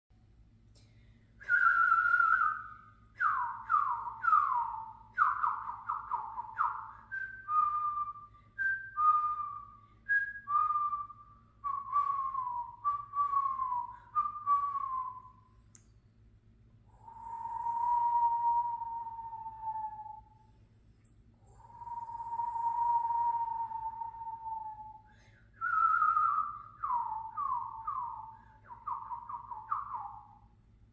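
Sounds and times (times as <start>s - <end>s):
girl whistling a tune: 1.4s - 15.6s, 16.9s - 20.6s, 21.4s - 30.5s.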